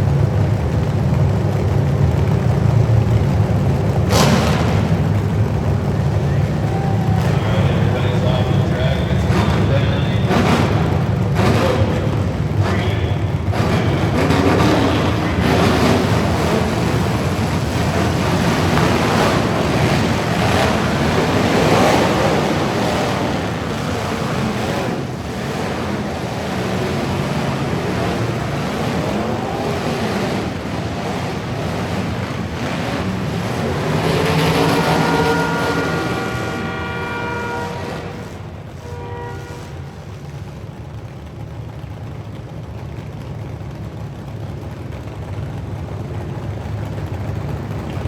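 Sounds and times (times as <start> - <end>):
engine rising and falling: 0.0 - 38.8
heavy vehicles rushing: 0.0 - 48.0
vehicle horn: 6.4 - 40.2.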